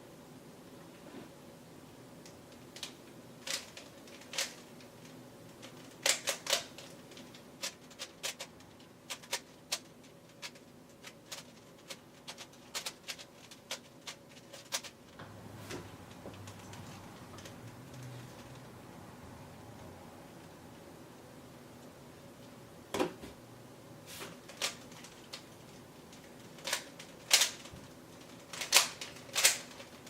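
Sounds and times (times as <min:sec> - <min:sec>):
plastic puzzle cube clicking: 0:05.6 - 0:15.0, 0:26.1 - 0:30.0.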